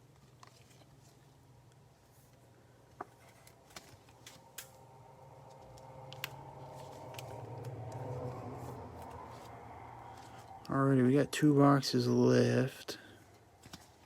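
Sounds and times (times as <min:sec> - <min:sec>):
low hum: 0:03.4 - 0:12.7.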